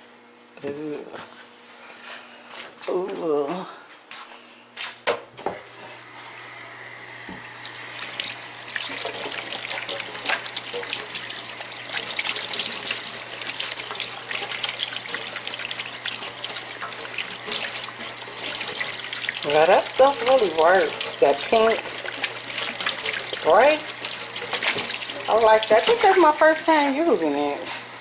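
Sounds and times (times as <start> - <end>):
faucet water splashing in sink: 7.1 - 28.0.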